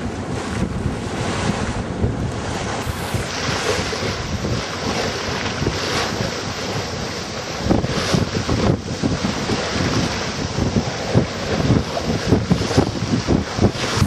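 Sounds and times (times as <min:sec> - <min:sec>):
water washing past hull: 0:00.0 - 0:14.0
wind buffeting microphone: 0:00.0 - 0:14.0.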